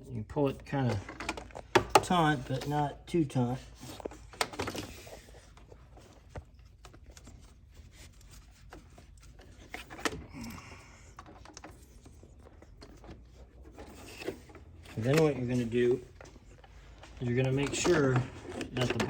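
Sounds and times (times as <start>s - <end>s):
light clicks and rubs: 0.8s - 10.2s.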